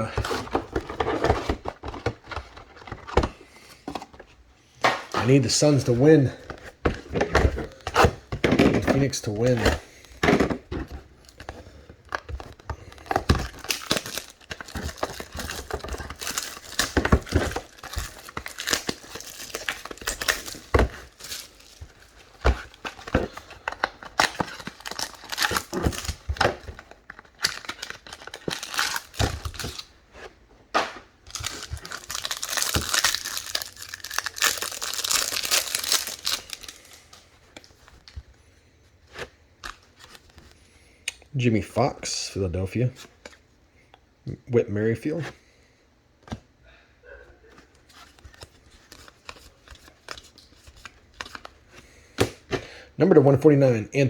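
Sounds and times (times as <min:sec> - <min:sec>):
plastic wrapping crinkling and tearing: 0:12.1 - 0:29.9, 0:31.3 - 0:37.2.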